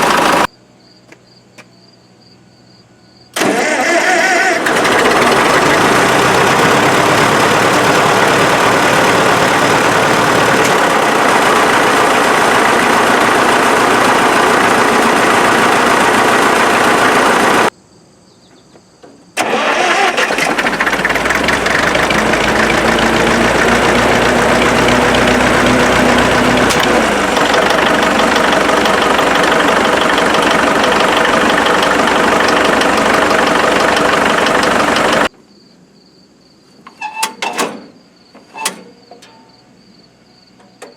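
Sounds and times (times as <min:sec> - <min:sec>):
diesel tractor engine running: 0:00.0 - 0:00.5, 0:03.4 - 0:17.7, 0:19.4 - 0:35.3.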